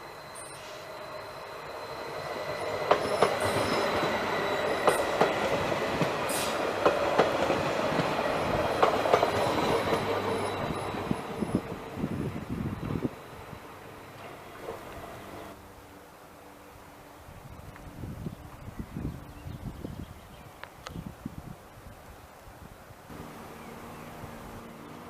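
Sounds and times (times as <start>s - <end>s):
train wheels rumbling on rail: 0.0s - 15.6s
wheels clicking over rail joints: 2.8s - 10.5s.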